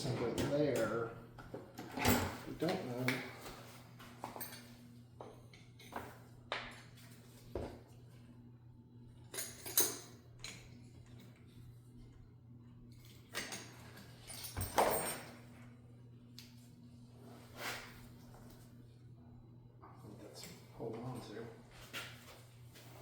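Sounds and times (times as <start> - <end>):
metal tools clinking and knocking: 13.4 - 15.4.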